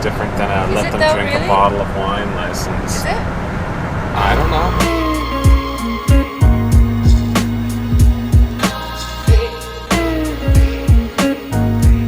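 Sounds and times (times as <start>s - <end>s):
guitar-led tune: 4.2s - 12.0s
drum beat with deep kick: 4.7s - 12.0s.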